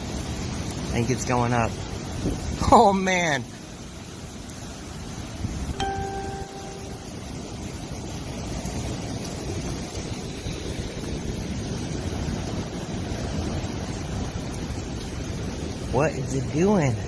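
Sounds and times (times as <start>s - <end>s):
gusty wind buffeting microphone: 1.7s - 2.7s, 3.9s - 5.8s, 7.4s - 16.0s
brief ringing tone: 5.8s - 7.2s.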